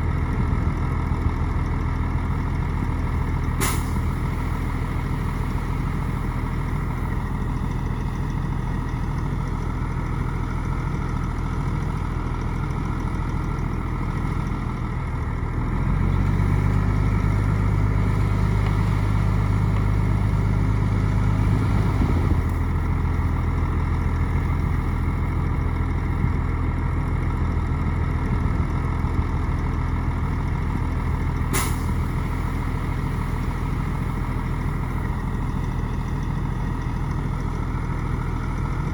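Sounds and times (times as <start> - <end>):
bulldozer diesel engine running: 0.0 - 38.9
sharp clank: 3.6 - 4.0, 31.5 - 32.0.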